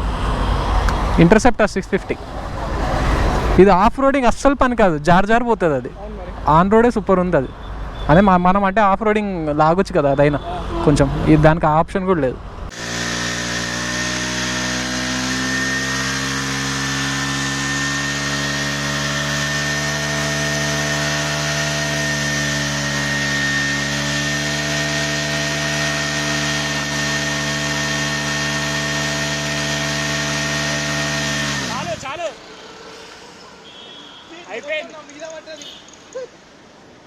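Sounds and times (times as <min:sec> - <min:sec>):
motorcycle engine revving high: 0:12.7 - 0:33.0.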